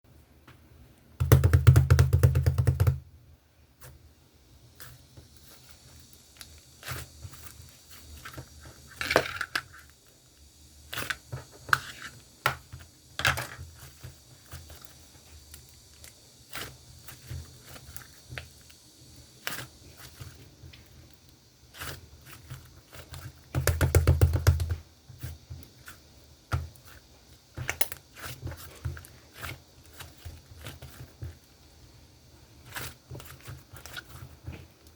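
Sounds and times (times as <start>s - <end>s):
hands squishing slime: 13.8s - 18.8s, 19.4s - 20.5s, 21.2s - 31.5s, 32.6s - 34.9s.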